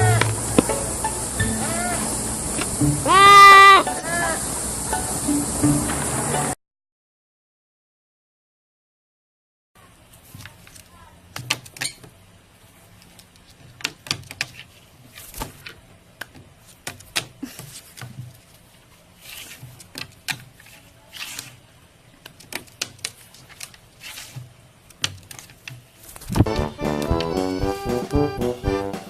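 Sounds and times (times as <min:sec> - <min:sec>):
brief rustling: 0:22.2 - 0:26.5.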